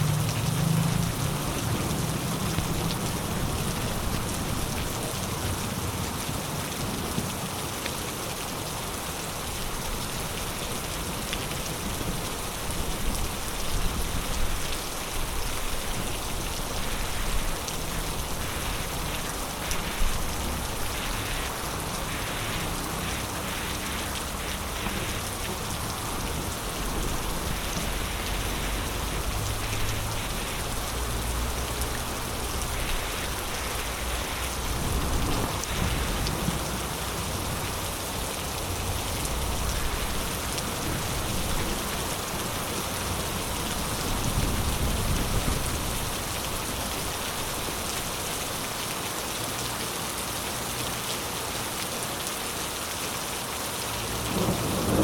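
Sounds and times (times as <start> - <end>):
heavy rain falling: 0.0 - 55.0
low thunder rumbles: 54.2 - 55.0.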